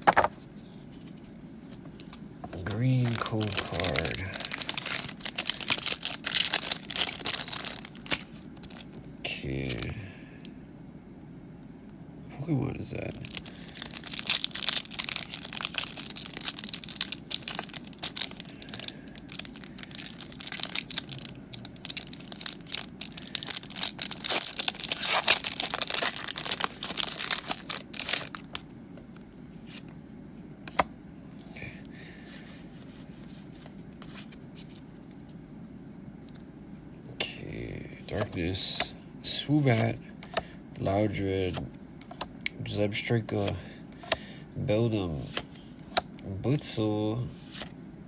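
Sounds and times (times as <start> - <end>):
foil wrapper crinkling and tearing: 2.6 - 8.9, 13.1 - 28.6.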